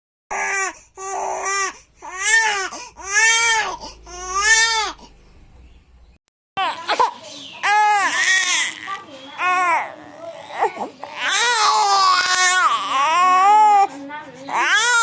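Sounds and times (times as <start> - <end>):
baby crying: 0.3 - 5.0, 6.6 - 13.9, 14.5 - 15.0.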